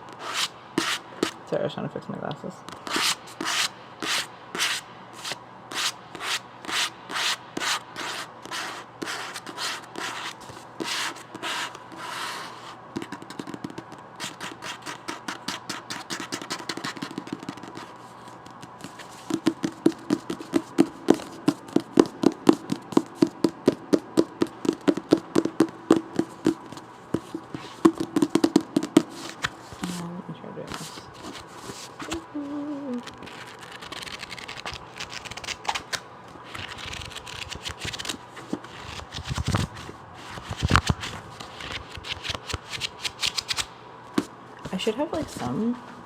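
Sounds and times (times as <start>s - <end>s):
fingertips scratching a book: 0.1s - 1.4s, 2.7s - 30.1s, 30.7s - 32.2s, 32.9s - 43.6s
light tapping on a book: 13.0s - 15.0s, 15.6s - 29.3s.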